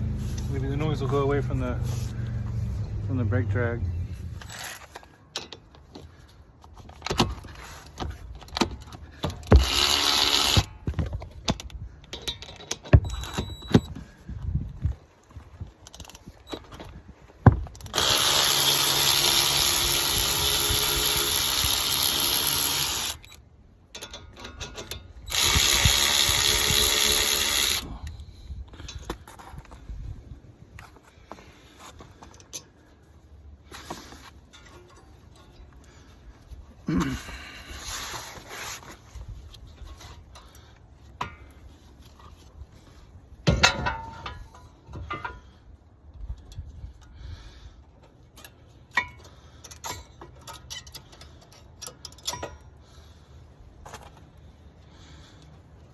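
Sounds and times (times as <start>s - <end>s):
metallic clicks and knocks: 6.9s - 13.9s, 23.2s - 25.6s
power tool running: 9.5s - 10.7s, 17.8s - 23.3s, 25.3s - 27.9s.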